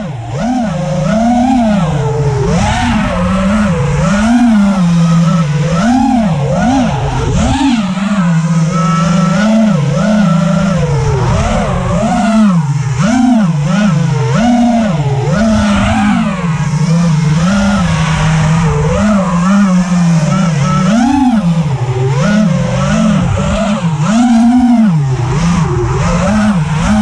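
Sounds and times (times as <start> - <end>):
drone motors whining: 0.0 - 27.0.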